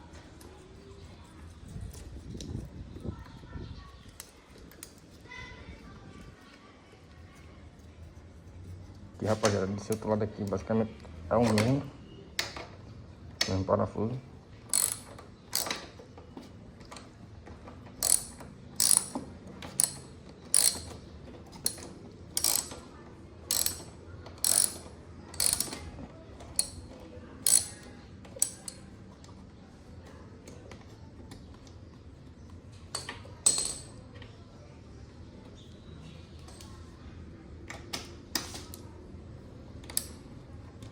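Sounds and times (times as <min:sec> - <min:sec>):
ratchet wrench clicking: 0:14.7 - 0:15.8, 0:18.0 - 0:21.0, 0:21.6 - 0:22.8, 0:23.5 - 0:25.8, 0:26.5 - 0:28.8.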